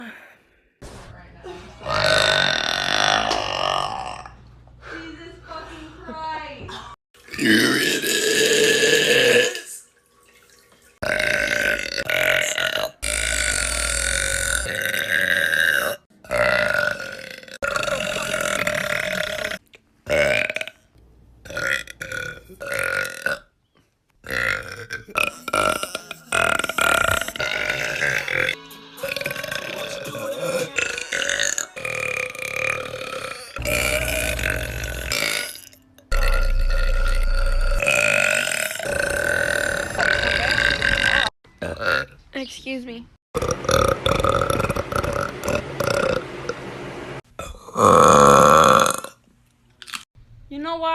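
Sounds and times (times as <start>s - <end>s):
girl burping loudly: 1.8s - 4.4s, 7.3s - 9.7s, 11.0s - 20.8s, 21.5s - 23.5s, 24.3s - 42.2s.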